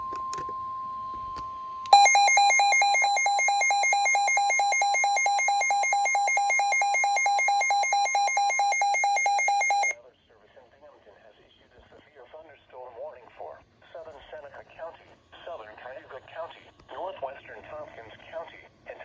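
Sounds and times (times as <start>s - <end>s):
warbling electronic alarm: 2.0s - 10.0s.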